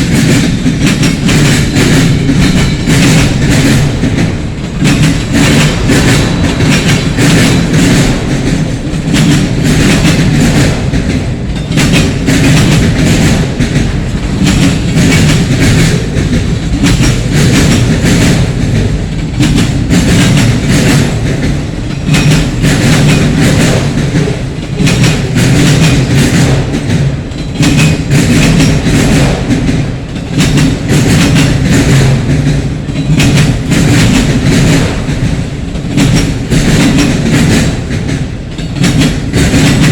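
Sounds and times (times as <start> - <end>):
heavy train rumble: 0.0 - 39.9
train wheels clacking over rail joints: 0.0 - 39.9.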